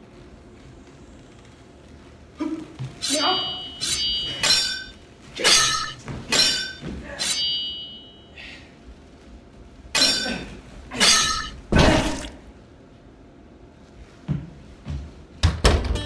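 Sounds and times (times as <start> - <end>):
metallic sword clangs: 3.0 - 8.2, 10.0 - 12.4.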